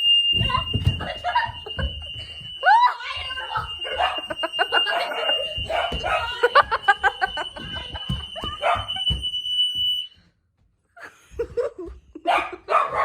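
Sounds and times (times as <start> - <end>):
fire alarm tone: 0.0 - 10.4
people laughing: 0.5 - 9.3, 11.0 - 12.9.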